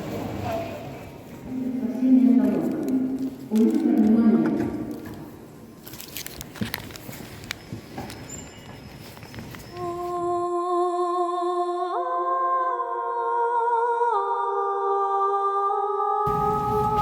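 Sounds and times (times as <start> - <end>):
slow melody of long held notes: 9.8 - 17.0.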